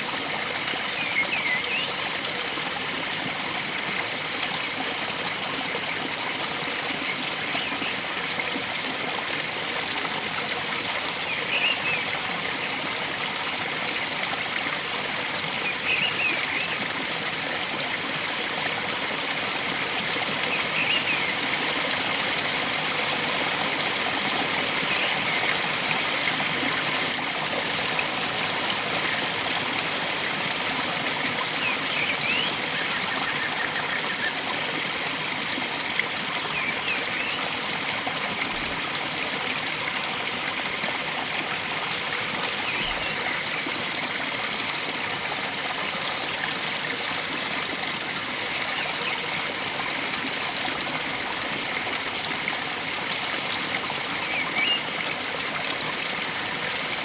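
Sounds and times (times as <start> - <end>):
stream of water flowing: 0.0 - 57.0.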